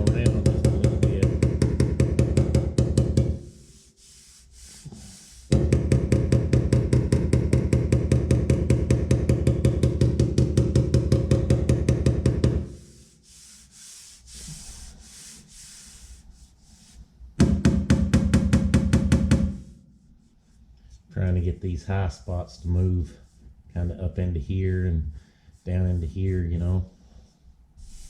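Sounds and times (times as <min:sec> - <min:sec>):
hammer tapping on sheet metal: 0:00.0 - 0:03.5, 0:05.5 - 0:12.8, 0:17.4 - 0:19.7
soft rubbing: 0:03.5 - 0:05.5, 0:12.7 - 0:17.3, 0:19.8 - 0:21.1, 0:25.1 - 0:28.0.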